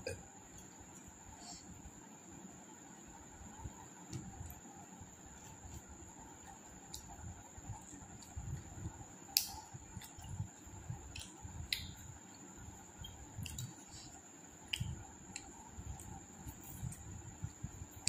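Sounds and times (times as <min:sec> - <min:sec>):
mouth clicks and smacks: 0:14.7 - 0:16.1.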